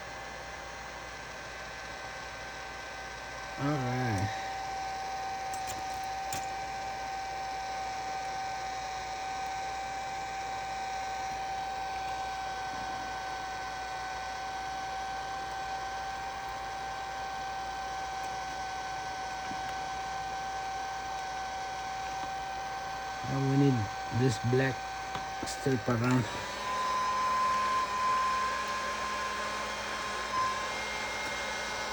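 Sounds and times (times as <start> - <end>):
heat gun whining: 0.8 - 31.9.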